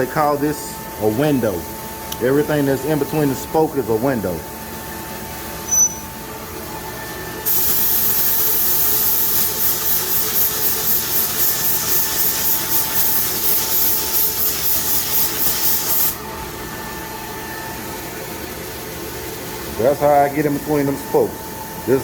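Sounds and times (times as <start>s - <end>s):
paint spray gun hissing: 7.5s - 16.2s.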